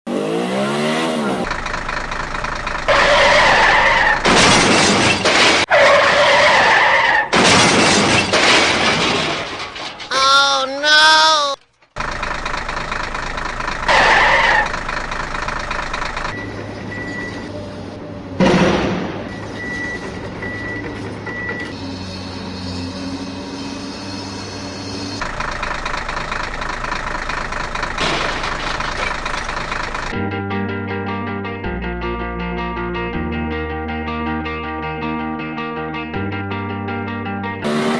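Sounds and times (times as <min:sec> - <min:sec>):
car tyres screeching: 0:00.1 - 0:10.1, 0:12.0 - 0:30.2, 0:37.6 - 0:37.9
truck engine running: 0:00.7 - 0:10.1, 0:11.9 - 0:21.5, 0:25.1 - 0:30.2
harsh crashing noise: 0:01.5 - 0:10.2, 0:25.2 - 0:30.2
music: 0:30.2 - 0:37.7.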